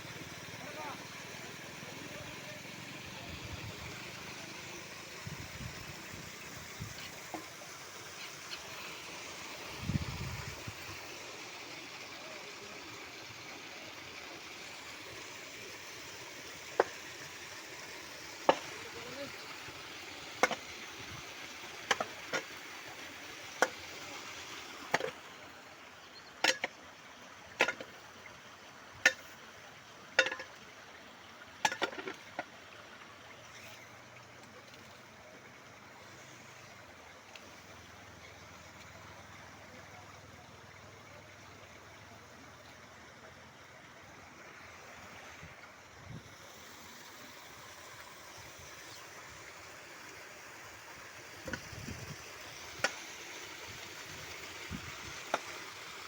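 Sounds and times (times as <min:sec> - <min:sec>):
rain falling: 0:00.0 - 0:04.9.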